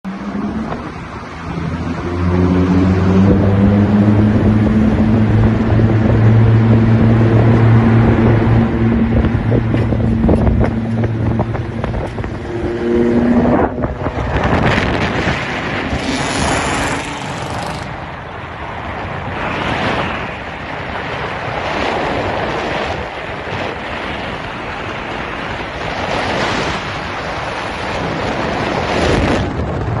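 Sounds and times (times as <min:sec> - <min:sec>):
wind and road noise: 0:00.0 - 0:30.0
car exhaust droning: 0:00.1 - 0:18.7.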